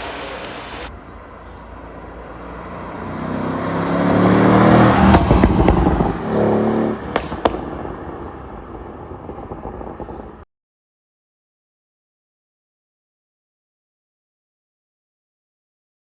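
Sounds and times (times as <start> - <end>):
car engine revving: 0.0 - 9.8
exhaust popping and crackling: 2.7 - 10.4.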